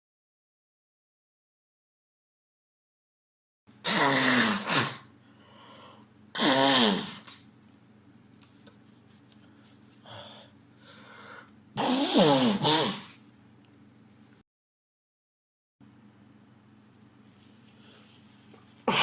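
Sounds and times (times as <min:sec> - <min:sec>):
man blowing his nose: 0:03.8 - 0:05.1, 0:06.3 - 0:07.4, 0:11.8 - 0:13.2.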